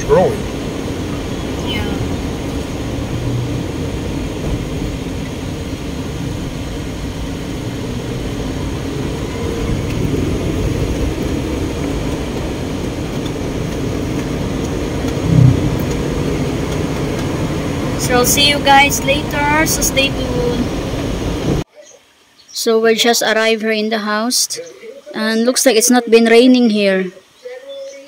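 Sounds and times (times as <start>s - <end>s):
vehicle engine and tyre rumble: 0.0s - 21.6s
short loud low sound: 15.2s - 16.4s.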